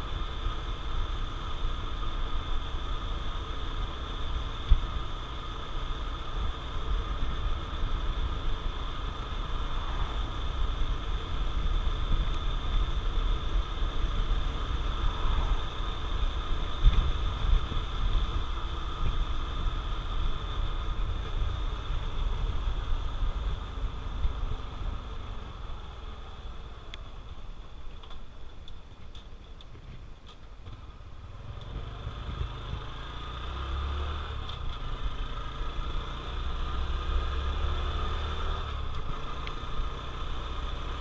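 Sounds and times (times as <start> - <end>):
steady high whine: 0.0 - 29.6
wind rumbling on microphone: 3.9 - 33.7
motorcycle engine running: 30.6 - 41.0.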